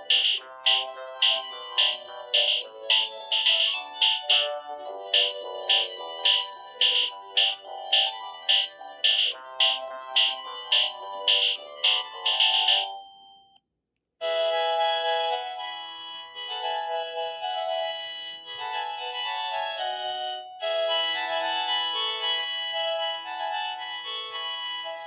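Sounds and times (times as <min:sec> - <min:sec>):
pulsing electronic phone ring: 0:00.0 - 0:13.4
synthesized melody ringtone: 0:00.0 - 0:13.6, 0:14.2 - 0:25.0.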